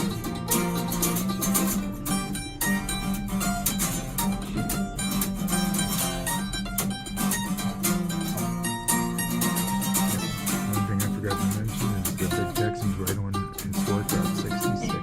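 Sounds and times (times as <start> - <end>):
plucked guitar music: 0.0 - 15.0.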